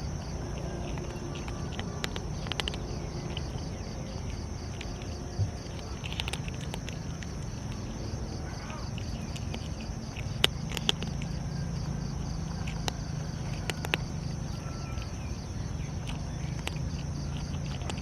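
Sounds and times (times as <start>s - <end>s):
cat chewing food: 0.0s - 18.0s
insect trill: 0.0s - 18.0s.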